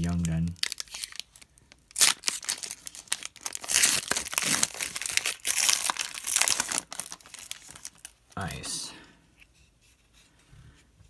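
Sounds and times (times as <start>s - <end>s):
wrapper tearing and crinkling: 0.0s - 8.3s.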